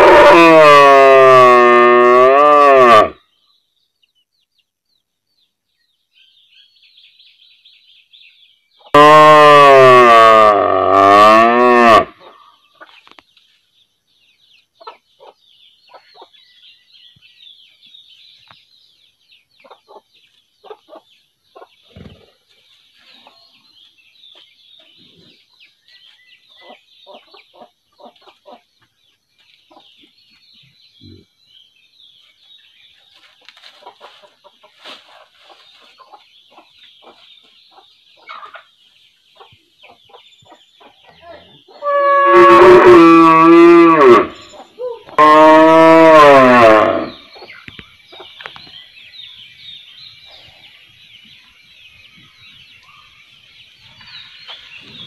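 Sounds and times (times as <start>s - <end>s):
cow mooing: 0.0s - 3.2s, 9.0s - 12.1s, 41.8s - 44.4s, 45.1s - 47.2s
high chirping of birds or insects: 1.9s - 9.4s, 10.6s - 42.8s, 43.4s - 55.0s
faint chicken clucks: 12.2s - 13.5s, 14.5s - 18.6s, 19.5s - 31.4s, 32.2s - 41.8s, 47.2s - 48.9s.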